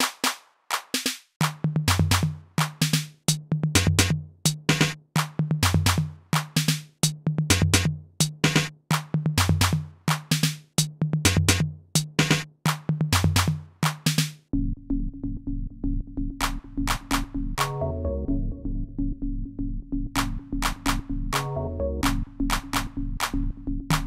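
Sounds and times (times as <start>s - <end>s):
fast drum machine beat: 0.0s - 14.5s, 16.4s - 17.8s, 20.2s - 24.0s
pulsing bass line: 14.5s - 24.0s.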